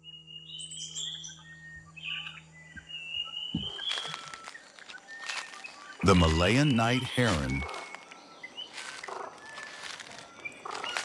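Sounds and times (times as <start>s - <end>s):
small birds chirping and whistling: 0.0s - 11.0s.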